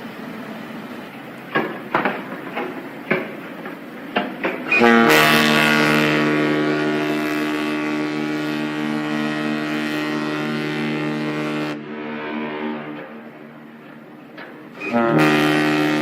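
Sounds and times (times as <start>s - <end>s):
sharp knocks: 1.5s - 4.8s
ship's horn blast: 4.6s - 16.0s.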